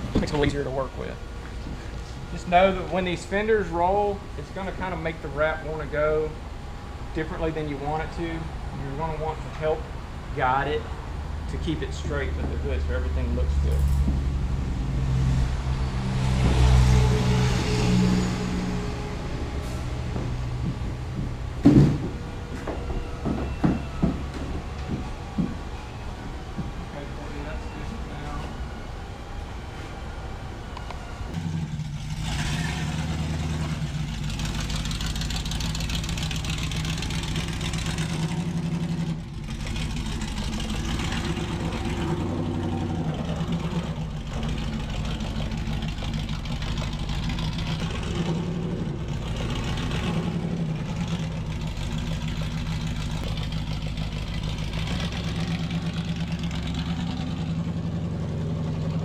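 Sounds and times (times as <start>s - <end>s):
engine running: 0.0s - 59.0s.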